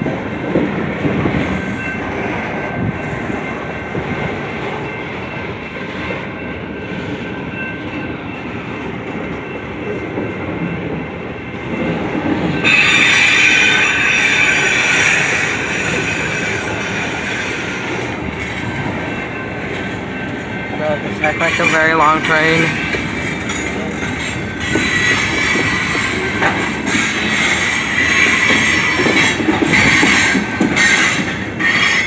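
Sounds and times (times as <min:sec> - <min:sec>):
train wheels rumbling on rails: 0:00.0 - 0:32.0
high wheel squeals: 0:12.6 - 0:19.4, 0:20.8 - 0:32.0.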